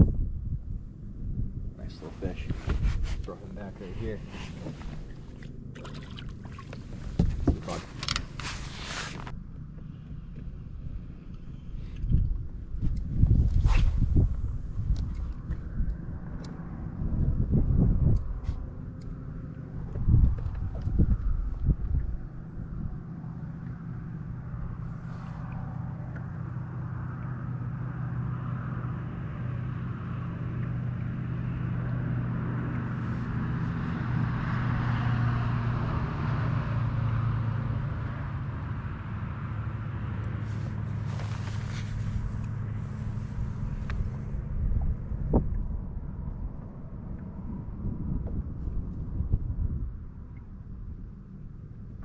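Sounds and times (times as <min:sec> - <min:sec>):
outboard engine running: 0:01.6 - 0:13.4, 0:18.3 - 0:35.6, 0:38.6 - 0:49.4
water rushing: 0:03.4 - 0:08.0
wind rushing: 0:12.8 - 0:15.0.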